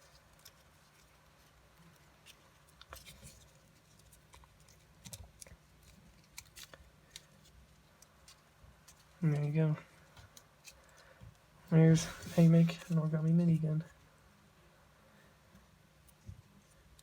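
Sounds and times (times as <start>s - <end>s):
paper crinkling and tapping: 0.0s - 11.4s.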